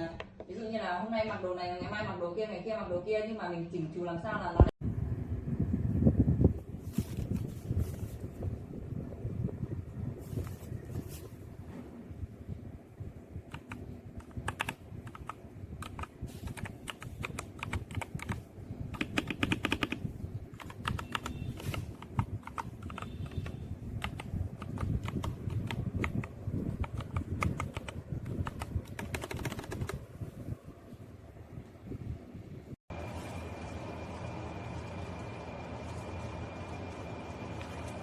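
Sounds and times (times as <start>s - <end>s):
low rumble: 4.8s - 13.5s
keyboard key clicks: 13.5s - 18.4s, 19.0s - 20.0s.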